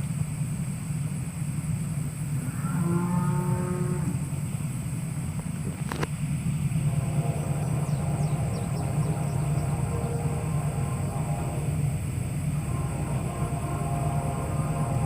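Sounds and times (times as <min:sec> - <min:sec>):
freight locomotive rumbling: 0:00.0 - 0:15.0
locomotive air horn chord: 0:02.4 - 0:04.4, 0:06.4 - 0:15.0.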